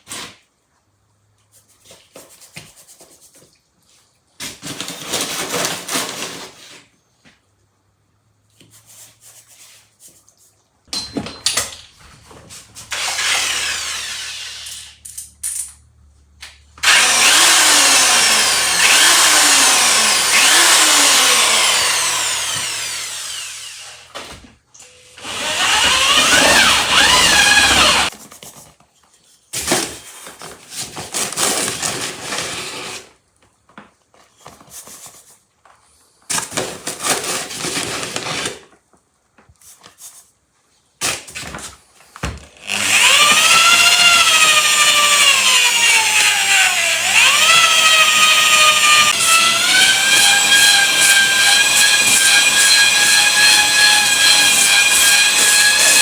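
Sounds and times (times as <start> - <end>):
electric power tool whining: 12.9 - 15.0, 16.8 - 24.2, 24.8 - 28.1, 42.5 - 56.0.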